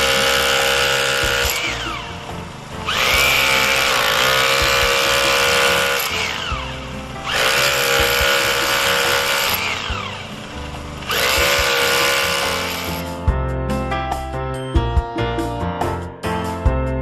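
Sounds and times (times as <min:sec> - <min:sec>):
hammer drill motor whining: 0:00.0 - 0:13.1.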